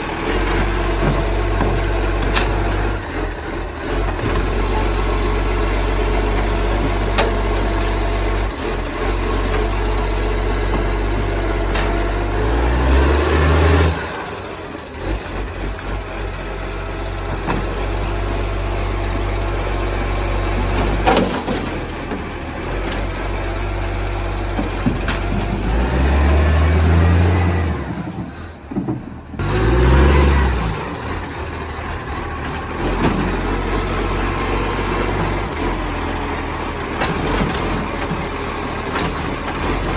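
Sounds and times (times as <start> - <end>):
diesel engine revving with exhaust leak: 0.0 - 21.9, 22.5 - 39.9.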